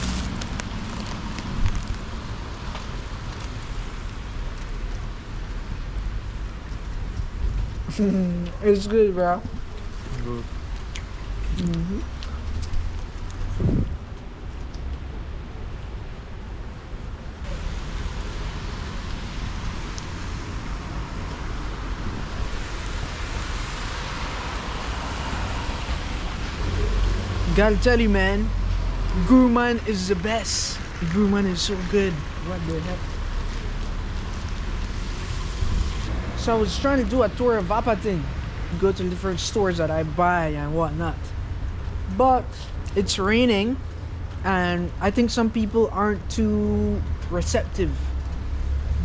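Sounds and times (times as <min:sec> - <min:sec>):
wind rumble on microphone: 0:00.0 - 0:04.3, 0:05.0 - 0:08.1, 0:09.4 - 0:27.6, 0:33.0 - 0:36.4
steady rain: 0:00.0 - 0:49.0.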